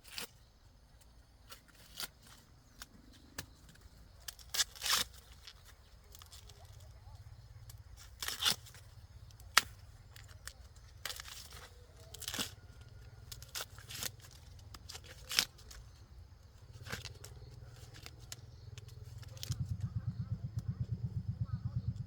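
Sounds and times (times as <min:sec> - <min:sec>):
corn stalks snapping and tearing: 0:00.0 - 0:20.1
rapid low throbbing: 0:19.5 - 0:22.0.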